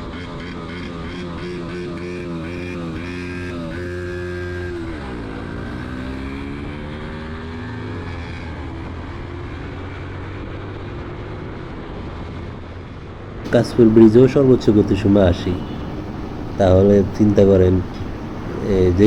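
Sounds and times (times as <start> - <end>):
motorcycle engine accelerating: 0.0 - 12.5, 13.5 - 19.0
rushing wind noise: 13.5 - 19.0.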